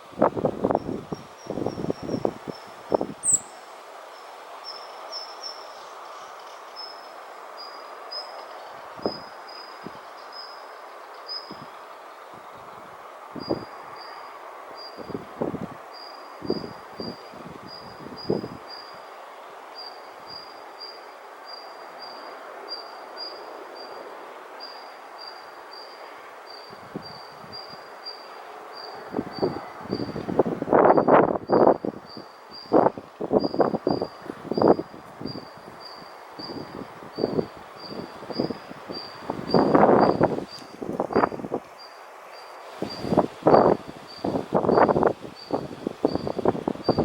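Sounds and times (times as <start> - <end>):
wind buffeting microphone: 0.0 - 3.5, 8.8 - 10.1, 11.5 - 14.0, 14.9 - 18.8, 26.7 - 28.0, 29.0 - 41.7, 42.8 - 47.0
outdoor hiss: 0.0 - 47.0
insect chirping: 0.6 - 12.2, 13.4 - 24.0, 24.6 - 47.0.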